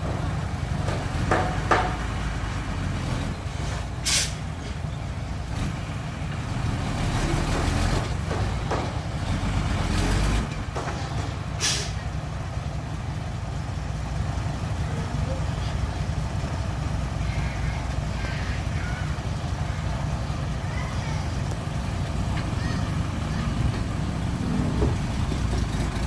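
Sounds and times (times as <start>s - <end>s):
diesel truck engine running: 0.0s - 26.0s
sharp air hiss: 4.0s - 4.4s, 11.6s - 12.0s.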